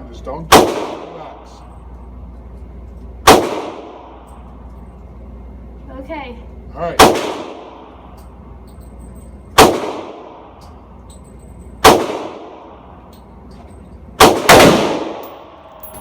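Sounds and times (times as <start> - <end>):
rifle shots echoing: 0.5 - 1.4, 3.2 - 4.2, 7.0 - 8.0, 9.6 - 10.6, 11.8 - 12.9, 14.2 - 15.7.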